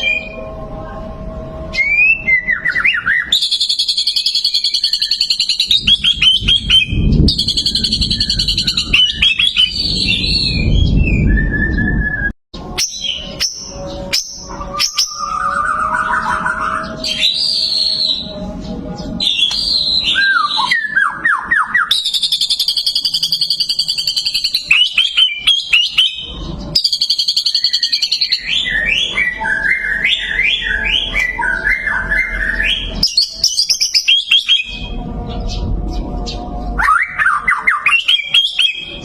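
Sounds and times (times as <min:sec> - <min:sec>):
bird singing whistles: 0:01.7 - 0:18.4, 0:19.0 - 0:35.7, 0:36.3 - 0:39.0.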